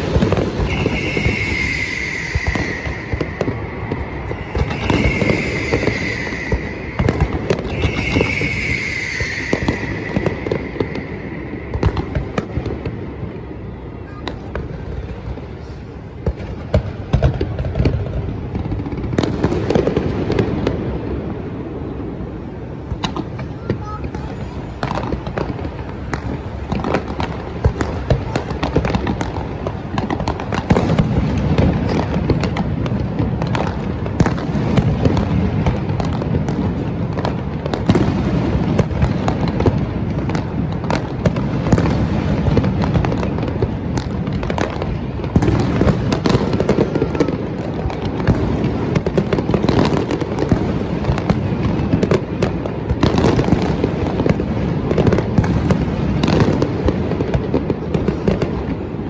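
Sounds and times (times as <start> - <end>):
fireworks bangs and crackles: 0.0 - 59.0.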